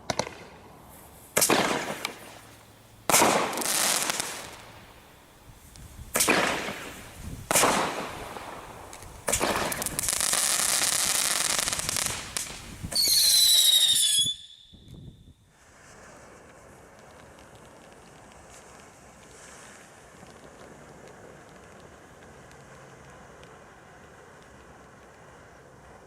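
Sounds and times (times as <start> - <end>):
firework bangs: 0.0 - 5.0, 5.9 - 15.0
firework rushing hiss: 0.0 - 26.0
shrill firework whistle: 9.4 - 15.5.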